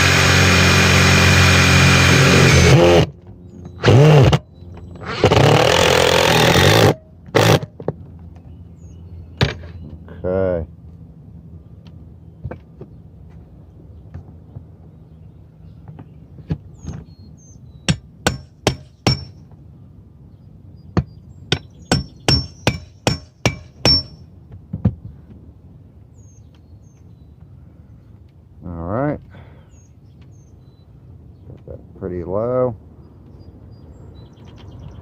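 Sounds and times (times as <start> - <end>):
hammer striking metal: 17.9 - 19.4, 21.5 - 24.2.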